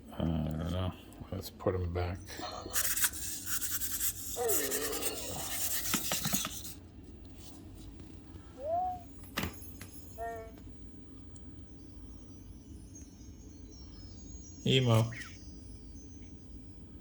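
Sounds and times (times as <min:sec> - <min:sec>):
rising electronic chirp: 0:11.7 - 0:16.9.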